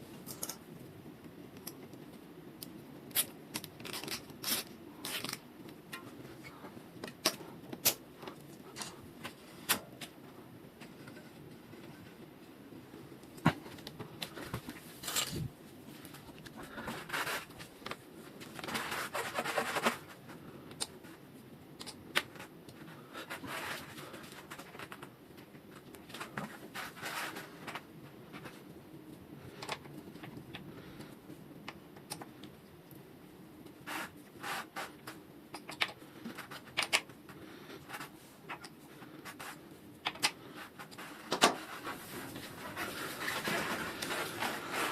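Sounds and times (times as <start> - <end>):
rubbing or scraping: 16.6 - 17.7, 18.6 - 20.2, 40.4 - 44.9.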